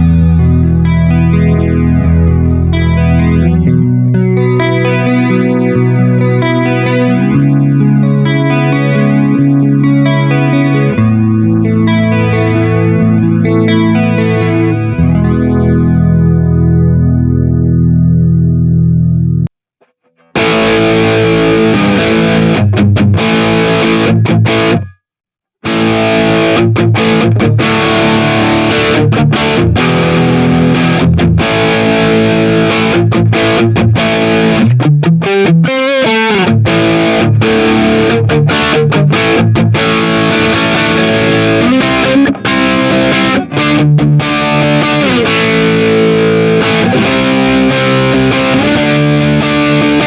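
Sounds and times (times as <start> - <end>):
distorted electric guitar: 0.0 - 50.0.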